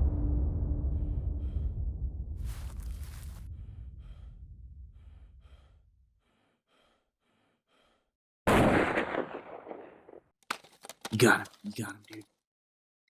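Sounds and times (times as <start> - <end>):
low rumble: 0.0 - 6.4
soft breathing: 2.4 - 8.2
rifle shot with echo: 8.5 - 10.2.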